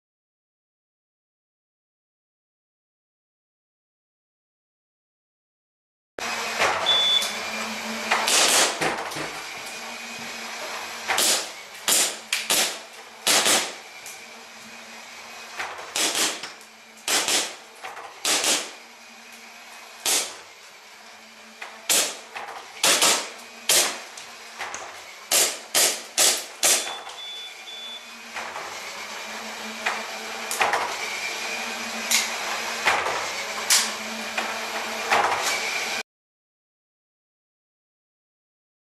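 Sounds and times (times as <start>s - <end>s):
short high beep: 6.8s - 7.4s, 26.8s - 28.1s
airsoft gun firing: 8.3s - 8.8s, 11.2s - 13.8s, 15.9s - 16.4s, 17.1s - 17.6s, 18.2s - 18.7s, 20.0s - 20.4s, 21.9s - 22.2s, 22.8s - 24.0s, 25.3s - 26.9s
pellets striking metal targets: 25.3s - 27.1s.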